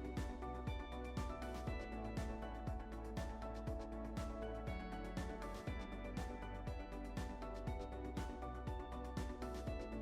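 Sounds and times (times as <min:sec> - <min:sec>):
background music with steady beat: 0:00.0 - 0:10.0.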